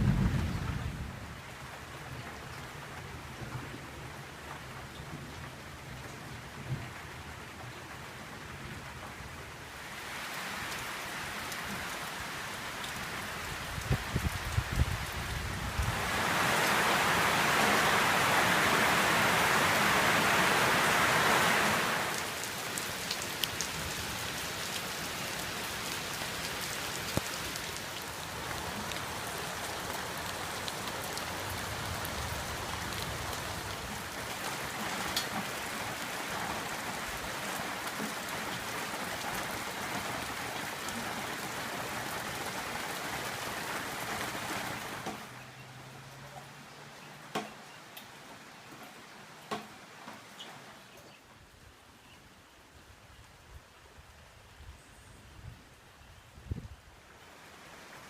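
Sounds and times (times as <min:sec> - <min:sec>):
heavy rain falling: 0:00.0 - 0:51.8, 0:57.0 - 0:58.0.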